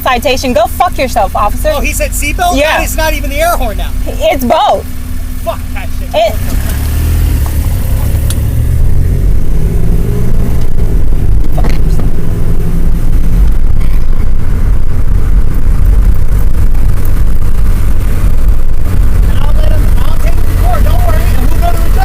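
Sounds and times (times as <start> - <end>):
vehicle engine rumble: 0.0 - 22.0
wind noise: 7.3 - 22.0.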